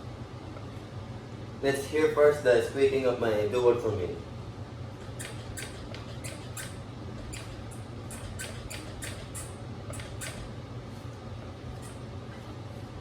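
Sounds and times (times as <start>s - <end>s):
electric scooter squeaking: 5.0s - 10.5s.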